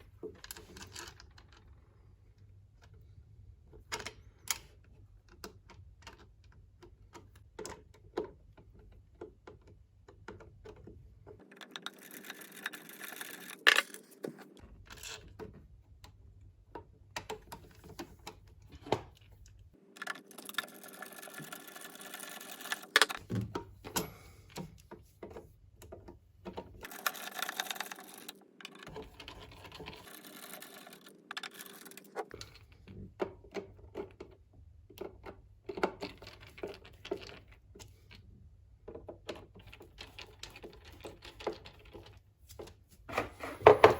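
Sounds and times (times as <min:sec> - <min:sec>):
clicks knocks and scraping: 0:20.0 - 0:24.0, 0:42.6 - 0:43.9.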